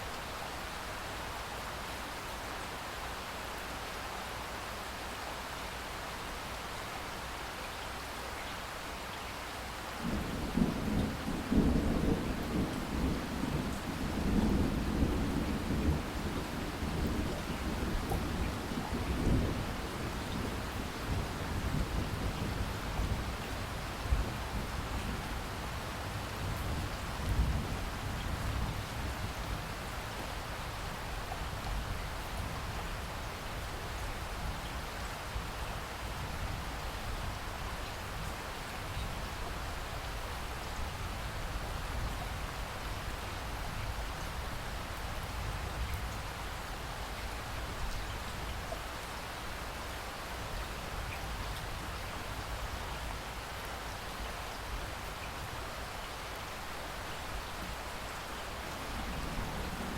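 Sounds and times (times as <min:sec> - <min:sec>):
steady rain falling: 0:00.0 - 0:59.9
low thunder rumble: 0:10.0 - 0:29.9, 0:58.4 - 0:59.9.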